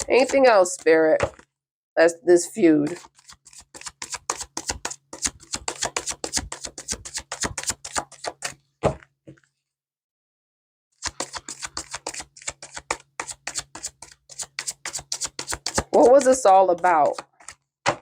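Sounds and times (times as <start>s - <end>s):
cards being shuffled: 2.8s - 8.6s, 11.0s - 18.0s.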